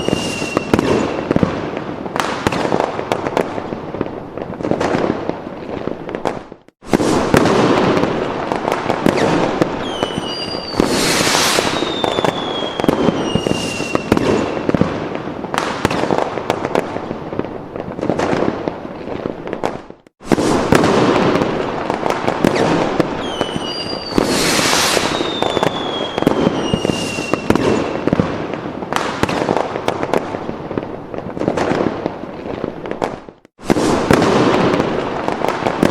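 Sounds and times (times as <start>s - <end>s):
falling firework whistles: 0.0s - 1.6s, 8.7s - 16.1s, 19.6s - 28.3s, 33.6s - 34.8s
fireworks crackling and popping: 0.0s - 35.9s.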